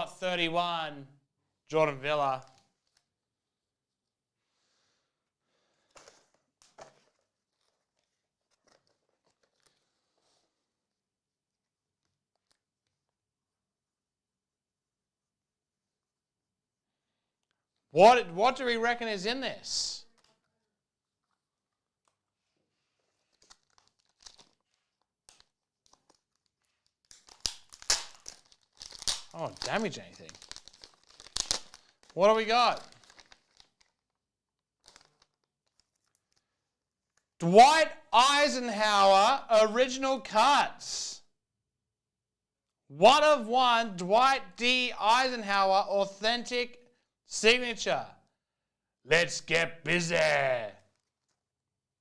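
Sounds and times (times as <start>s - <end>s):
card packaging rustling: 5.9s - 10.6s, 23.0s - 34.2s, 34.8s - 36.6s.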